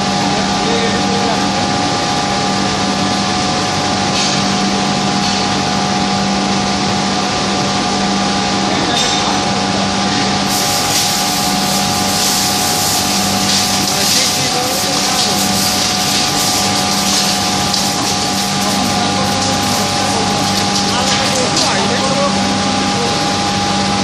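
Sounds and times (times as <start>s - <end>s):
industrial machinery hum: 0.0s - 24.0s
bright hissing noise: 10.4s - 21.7s
broad rushing noise: 10.4s - 21.9s.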